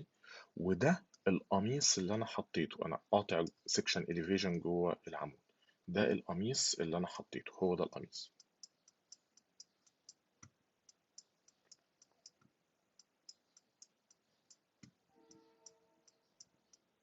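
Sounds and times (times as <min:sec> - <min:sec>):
faint small clicks: 0:08.3 - 0:16.9.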